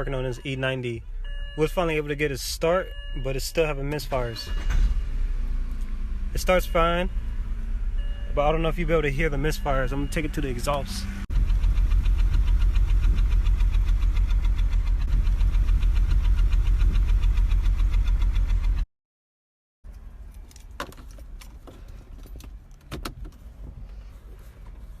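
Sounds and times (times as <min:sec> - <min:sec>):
car exhaust idling with misfires: 0:04.0 - 0:18.8.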